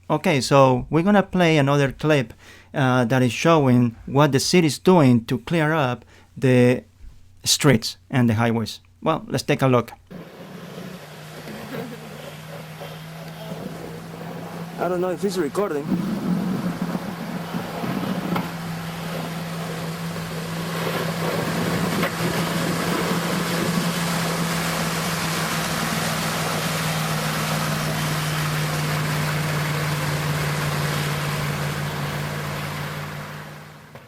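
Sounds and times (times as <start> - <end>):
road and wind noise hiss: 10.1 - 34.0
vehicle engine humming: 10.1 - 34.0.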